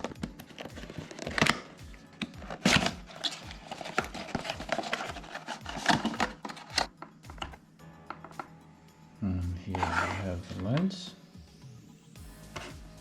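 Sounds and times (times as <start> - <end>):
packaging rustling: 0.0 - 7.6
packaging clicks and snaps: 0.0 - 8.5.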